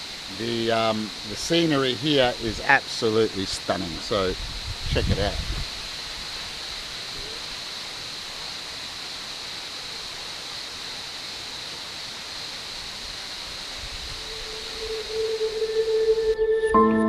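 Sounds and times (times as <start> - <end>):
waterfall rushing: 5.6 - 16.4.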